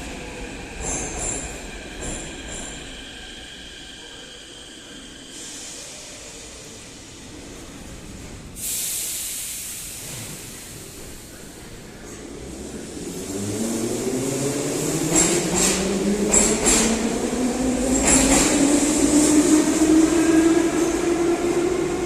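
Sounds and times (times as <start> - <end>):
metro car running noise: 0.0 - 22.0
compressed air hiss: 8.6 - 11.8.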